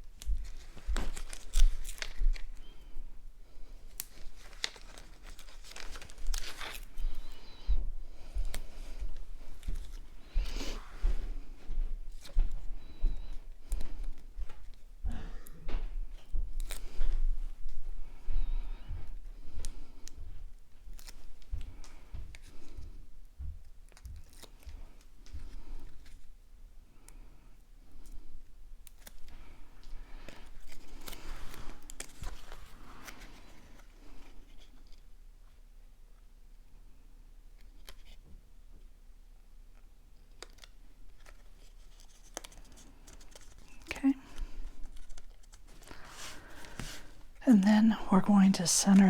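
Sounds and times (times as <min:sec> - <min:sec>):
paper crinkling and rustling: 0:00.0 - 0:03.0, 0:03.6 - 0:07.6, 0:08.4 - 0:14.9, 0:20.8 - 0:22.9, 0:23.8 - 0:26.4, 0:28.8 - 0:35.2, 0:39.7 - 0:49.0.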